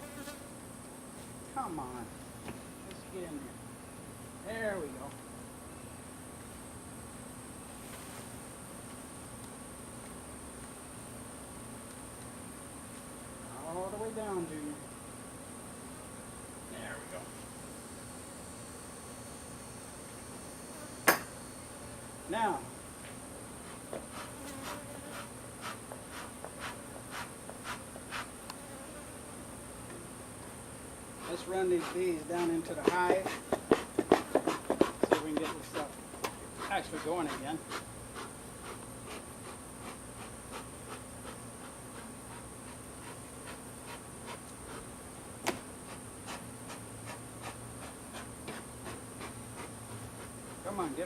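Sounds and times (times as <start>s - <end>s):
high insect drone: 0.0s - 51.0s
honeybees buzzing: 8.4s - 51.0s
scratchy strokes on wood: 23.6s - 28.3s, 31.2s - 45.0s.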